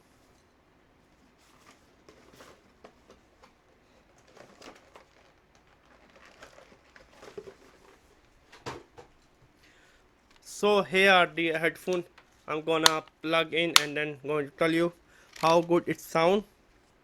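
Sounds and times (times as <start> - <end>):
headphones handling clicks and rustles: 11.9 - 13.9, 15.2 - 15.7.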